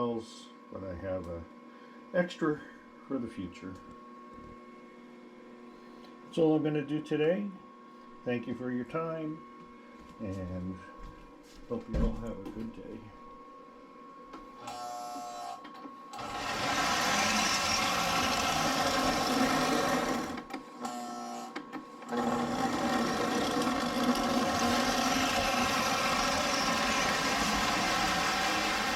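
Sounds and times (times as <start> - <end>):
toy train motor whirring: 16.2 - 20.5, 22.1 - 28.9.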